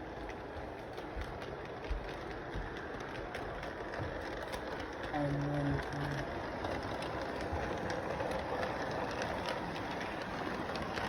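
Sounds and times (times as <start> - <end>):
train rumbling on track: 0.0 - 11.0.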